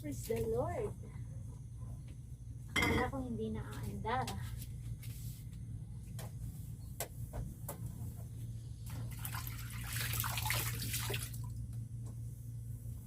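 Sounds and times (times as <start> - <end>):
refrigerator compressor humming: 0.0 - 13.0.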